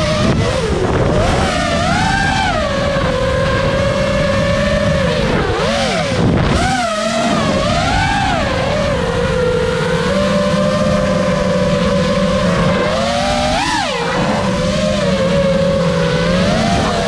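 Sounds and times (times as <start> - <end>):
quadcopter propellers whining: 0.0 - 17.0.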